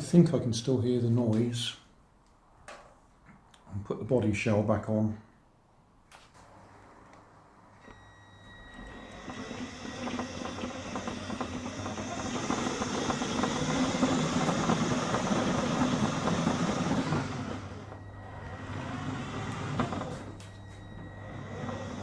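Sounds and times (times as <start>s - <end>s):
toy car motor whirring: 9.0s - 17.7s.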